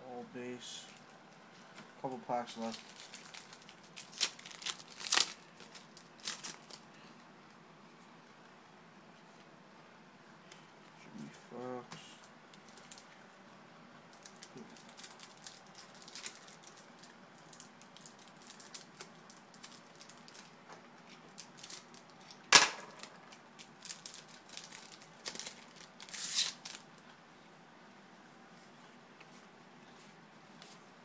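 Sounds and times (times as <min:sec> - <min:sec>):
cards being flipped through: 0:26.0 - 0:26.8.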